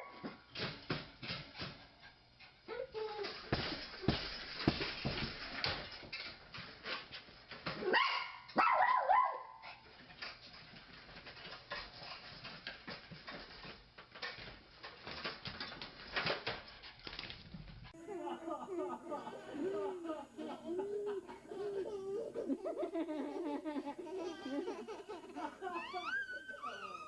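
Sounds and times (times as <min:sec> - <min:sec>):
dog crying: 0:20.6 - 0:27.0.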